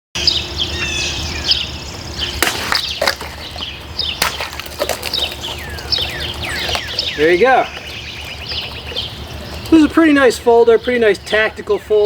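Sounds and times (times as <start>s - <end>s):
birds chirping: 0.2s - 12.0s
knife chopping plastic bottles: 4.2s - 7.1s.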